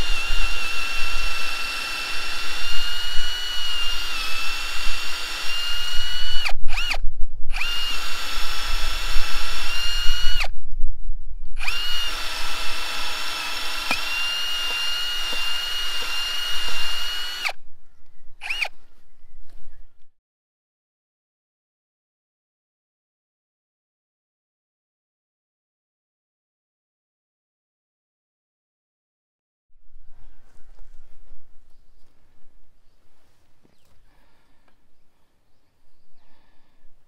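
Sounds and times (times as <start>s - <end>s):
cordless drill whining: 0.0s - 10.5s, 11.6s - 17.6s, 18.4s - 18.8s
drill trigger blips: 0.0s - 10.5s, 11.6s - 17.6s, 18.4s - 18.8s.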